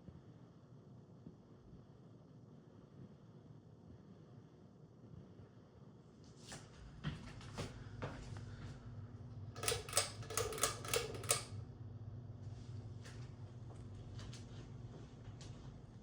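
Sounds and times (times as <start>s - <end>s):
ceiling fan motor hum: 0.0s - 16.0s
ringing clicks: 9.6s - 11.6s.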